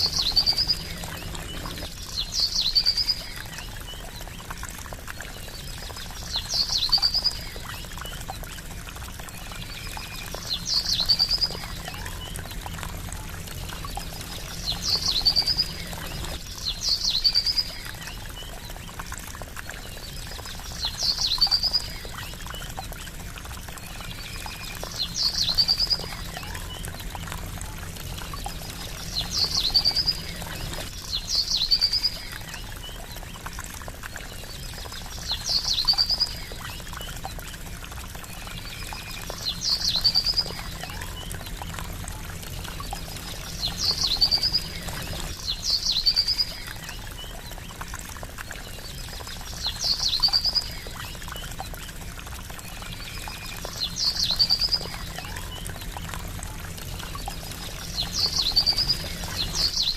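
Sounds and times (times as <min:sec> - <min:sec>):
trickling water: 0:00.0 - 0:59.9.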